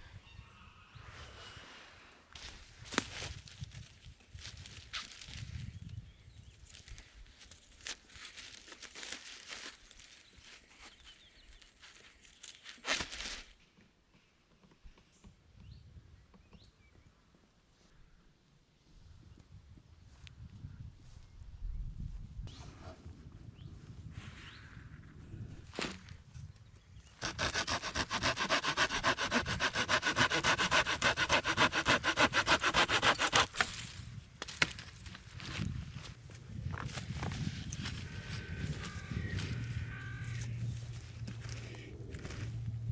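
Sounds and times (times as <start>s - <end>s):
dry leaves and twigs crackling: 6.7s - 13.6s
hand saw cutting wood: 27.2s - 33.8s.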